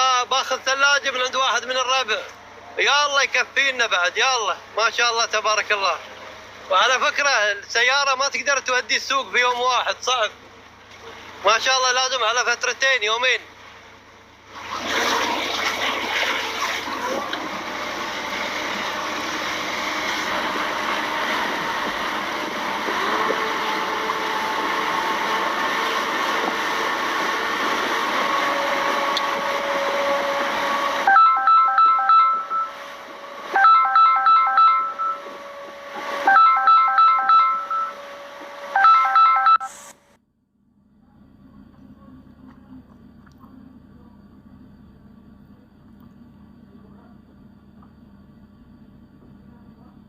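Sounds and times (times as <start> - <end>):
water and boat noise: 0.0 - 39.6
phone ringtone melody: 31.1 - 32.8, 33.6 - 35.3, 36.3 - 38.0, 38.8 - 39.8.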